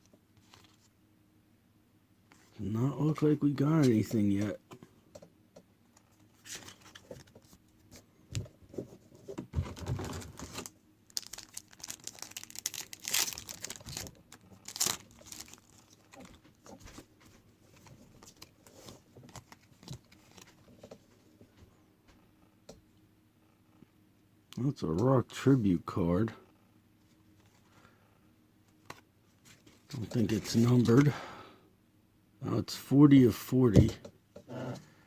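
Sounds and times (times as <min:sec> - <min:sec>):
card pack wrappers crinkling: 0:09.8 - 0:16.8, 0:17.7 - 0:20.6.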